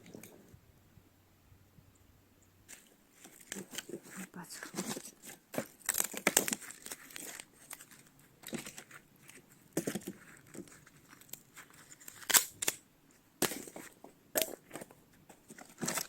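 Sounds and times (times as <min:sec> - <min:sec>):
crackling of split wood: 0:02.7 - 0:12.8, 0:13.4 - 0:16.0
wood cracking apart: 0:05.6 - 0:08.9, 0:12.0 - 0:12.8.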